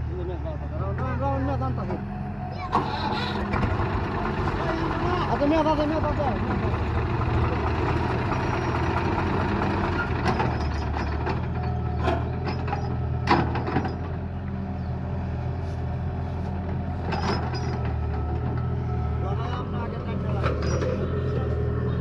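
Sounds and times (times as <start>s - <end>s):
heavy diesel engine running: 0.0s - 22.0s.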